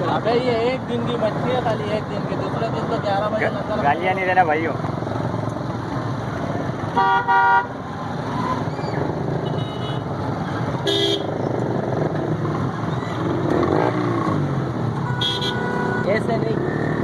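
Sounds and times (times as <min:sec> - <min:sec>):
road traffic: 0:00.0 - 0:17.0
vehicle horns honking: 0:06.9 - 0:07.8, 0:09.4 - 0:10.1, 0:10.8 - 0:11.4, 0:15.0 - 0:16.3.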